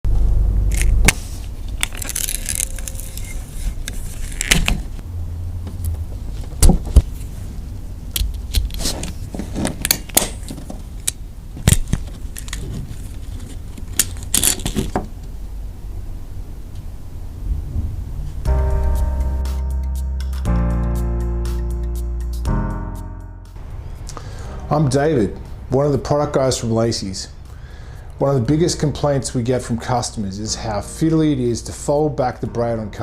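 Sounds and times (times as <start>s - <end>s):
low steady hum: 0.1s - 33.0s
small metal parts clinking: 1.8s - 4.6s.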